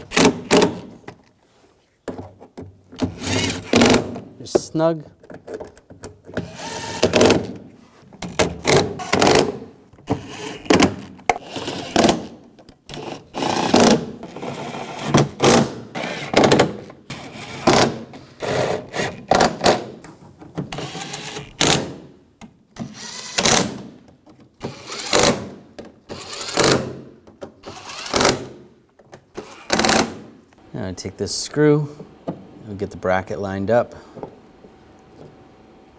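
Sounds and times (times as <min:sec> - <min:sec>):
screwdriver tightening screws: 0:27.6 - 0:28.5, 0:29.4 - 0:30.1.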